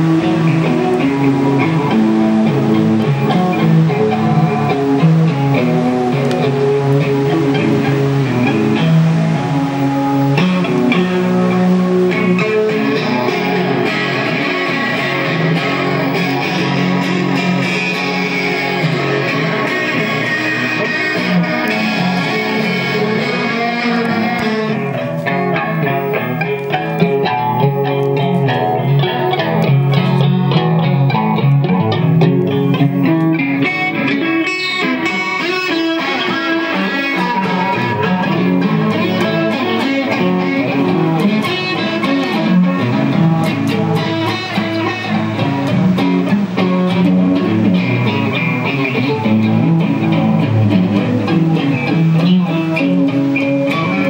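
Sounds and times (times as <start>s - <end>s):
plucked guitar notes: 0.0s - 54.0s.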